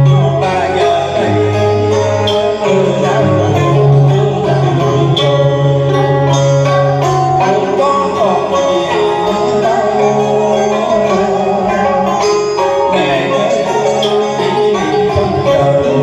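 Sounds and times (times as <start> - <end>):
instrumental backing music: 0.0 - 16.0.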